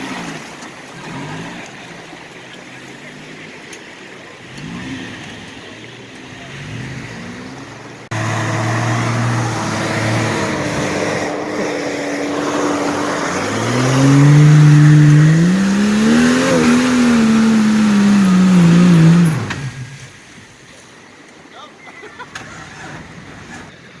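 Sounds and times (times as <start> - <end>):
off-road vehicle engine revving: 0.0 - 20.6.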